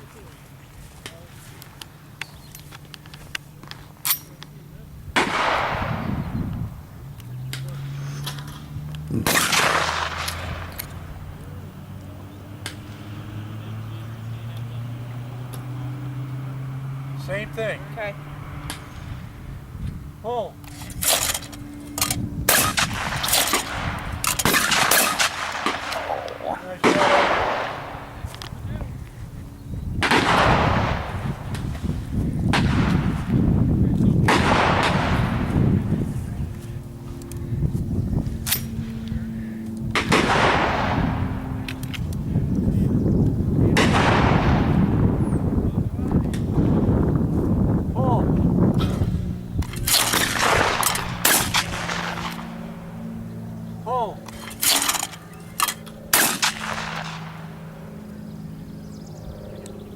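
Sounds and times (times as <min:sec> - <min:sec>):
low steady hum: 0:00.0 - 0:59.9
rolling echo: 0:04.7 - 0:59.9
shotgun shot: 0:05.2 - 0:06.3, 0:09.1 - 0:10.8, 0:22.5 - 0:28.2, 0:30.0 - 0:31.7, 0:32.5 - 0:33.3, 0:34.2 - 0:35.6, 0:40.0 - 0:41.5, 0:43.7 - 0:45.0, 0:49.8 - 0:52.6, 0:56.1 - 0:57.5.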